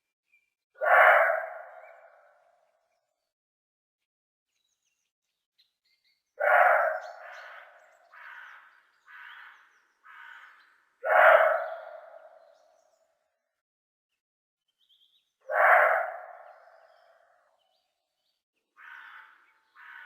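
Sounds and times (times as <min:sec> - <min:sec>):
deer barking: 0:00.8 - 0:01.6, 0:06.4 - 0:07.1, 0:11.0 - 0:11.9, 0:15.5 - 0:16.3.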